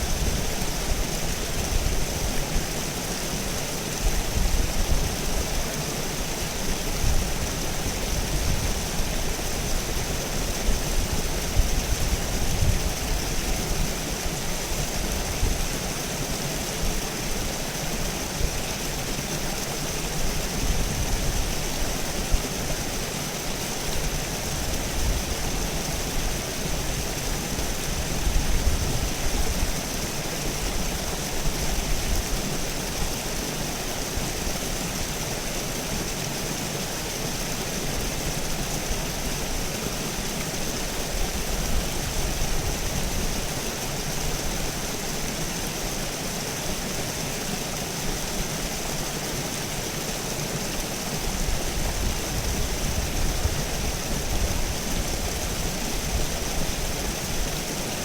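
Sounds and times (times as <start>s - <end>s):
river water rushing over rocks: 0.0s - 58.0s.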